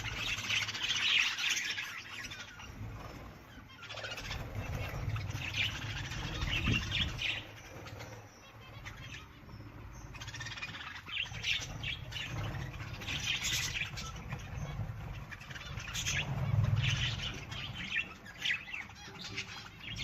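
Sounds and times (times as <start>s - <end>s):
birds chirping: 0.0s - 20.0s
low steady rumble: 4.2s - 20.0s.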